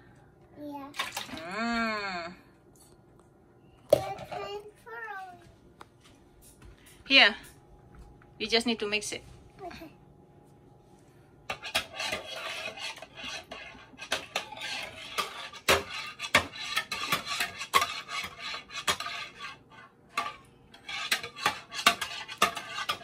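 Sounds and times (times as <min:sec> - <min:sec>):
utensil stirring in mixing bowl: 0:11.5 - 0:23.0.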